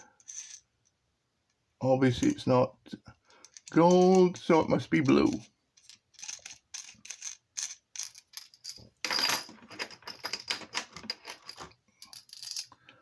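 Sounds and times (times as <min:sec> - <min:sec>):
screwdrivers clicking and rattling: 0:03.4 - 0:04.4, 0:05.1 - 0:12.8.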